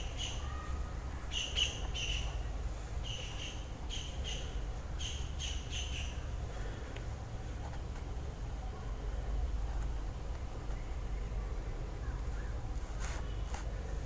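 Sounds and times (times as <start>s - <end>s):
small bird chirping: 0.0s - 6.3s
low steady rumble: 0.0s - 14.0s.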